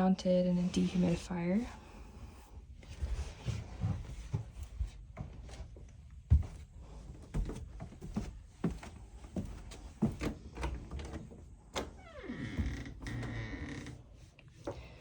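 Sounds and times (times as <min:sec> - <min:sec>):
footsteps on floor: 0:02.9 - 0:10.4.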